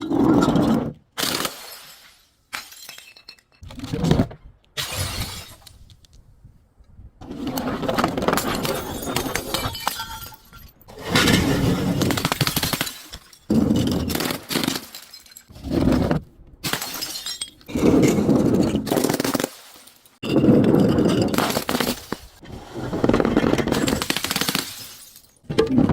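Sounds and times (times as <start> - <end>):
glass smashing and crunching: 1.2 - 3.7, 4.8 - 5.7, 8.3 - 15.6, 16.6 - 22.4, 23.6 - 25.5.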